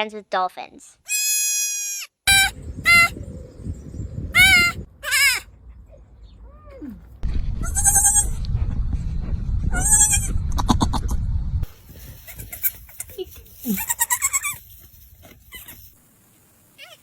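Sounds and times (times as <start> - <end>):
low rumble: 2.3 - 13.6
goats screaming: 4.4 - 5.5, 12.1 - 14.6.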